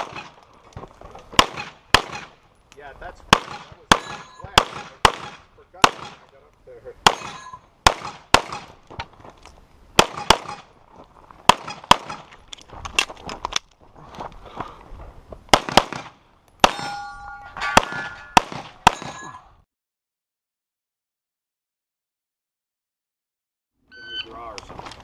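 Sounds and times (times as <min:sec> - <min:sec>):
pistol shots: 0:00.0 - 0:00.4, 0:01.4 - 0:02.4, 0:03.3 - 0:06.3, 0:07.0 - 0:08.8, 0:10.0 - 0:10.7, 0:11.5 - 0:12.3, 0:15.5 - 0:17.0, 0:17.7 - 0:19.3
bullets clanging on steel targets: 0:03.5 - 0:05.0, 0:07.1 - 0:08.7, 0:16.6 - 0:19.6.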